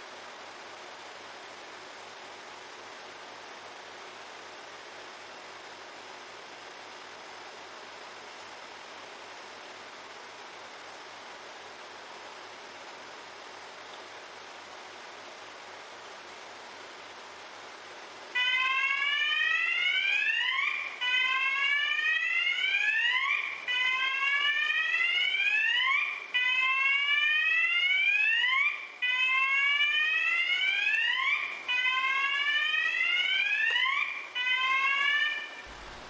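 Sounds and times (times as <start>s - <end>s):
steady hiss: 35.7s - 36.0s.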